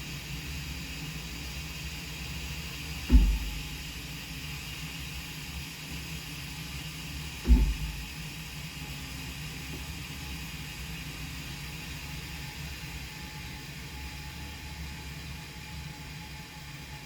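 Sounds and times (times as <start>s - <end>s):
low thumps: 3.1s - 3.8s, 7.5s - 8.1s.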